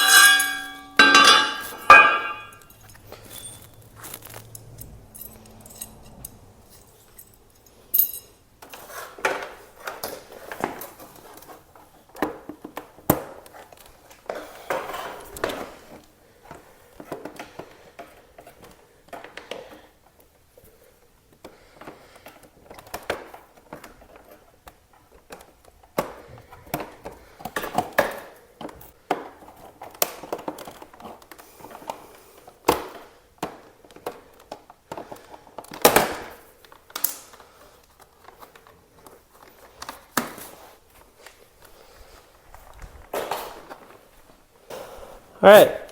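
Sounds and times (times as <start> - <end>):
hand tools clinking: 0.0 - 9.0.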